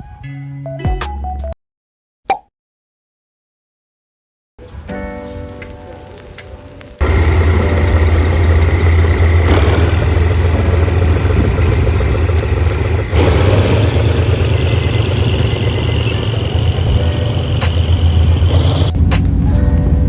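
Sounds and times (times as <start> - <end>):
vehicle engine running: 7.0 - 20.0.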